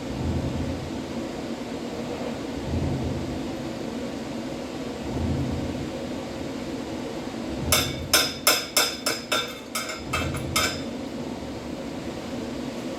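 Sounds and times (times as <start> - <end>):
chipping hammer striking metal: 7.7 - 10.9.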